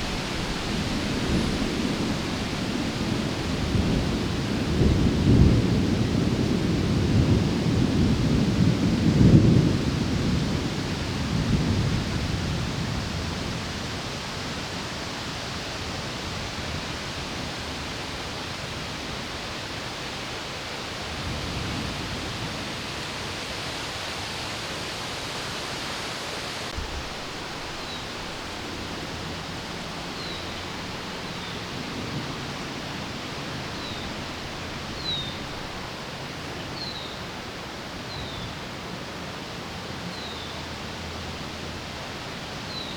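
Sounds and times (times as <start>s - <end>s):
thunder rumbling: 0.0s - 13.7s, 26.7s - 37.4s
wind and rain hissing: 0.0s - 42.9s.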